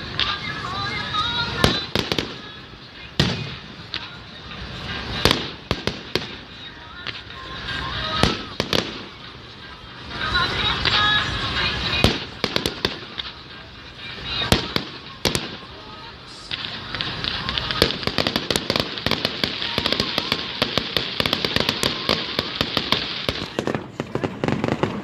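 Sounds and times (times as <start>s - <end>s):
firework crackle of small pops: 0.0s - 25.0s
loud firework bangs: 1.4s - 2.6s, 3.2s - 4.2s, 4.8s - 9.3s, 10.8s - 13.4s, 14.4s - 15.8s, 16.5s - 25.0s.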